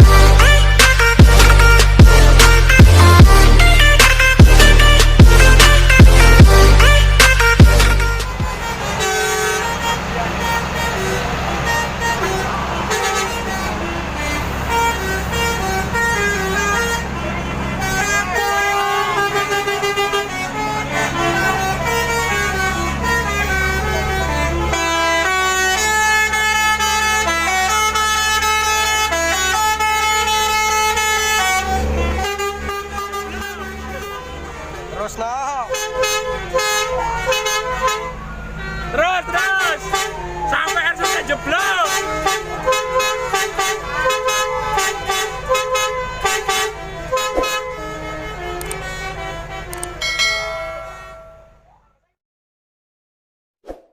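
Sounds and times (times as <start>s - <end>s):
bus air horn melody: 0.0s - 51.8s.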